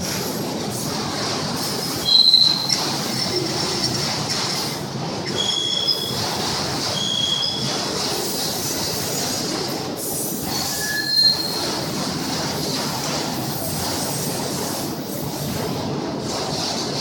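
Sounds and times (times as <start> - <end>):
high-pitched squeals: 2.0 - 4.0.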